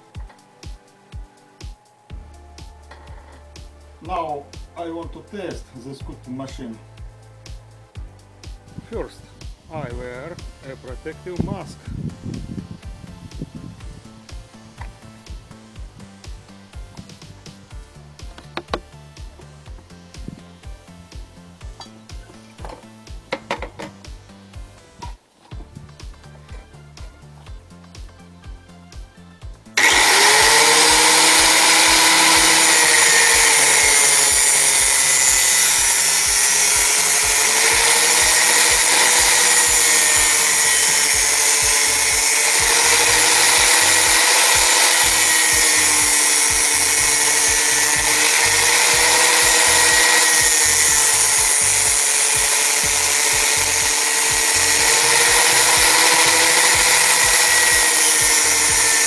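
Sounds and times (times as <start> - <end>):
angle grinder cutting metal: 29.8 - 59.0.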